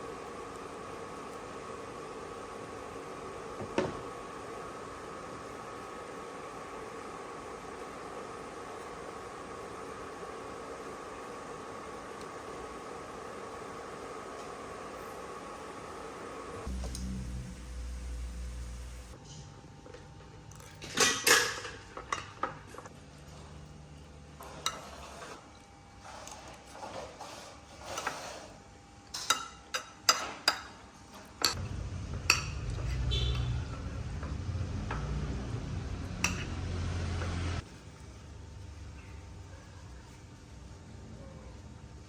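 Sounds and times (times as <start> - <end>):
steady low hum: 14.9 - 19.2, 31.5 - 37.7
utensils clinking against dishes: 20.7 - 22.5.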